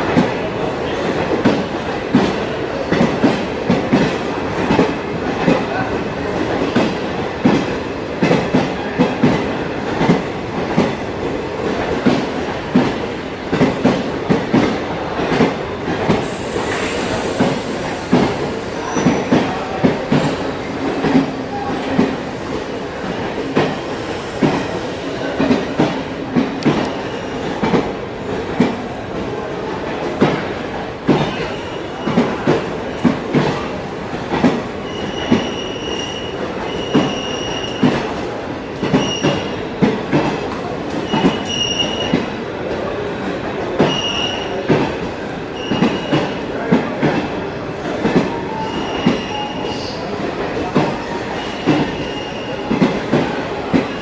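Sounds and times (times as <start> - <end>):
train wheels clattering: 29.9 - 42.3, 50.6 - 54.0
wheel squeal: 34.8 - 37.8, 51.4 - 52.5.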